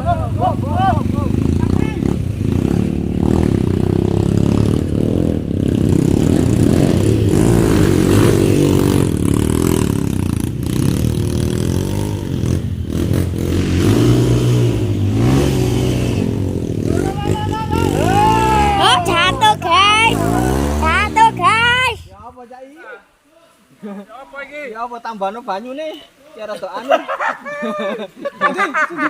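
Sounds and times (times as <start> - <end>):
motorcycle engines revving: 0.0 - 22.2.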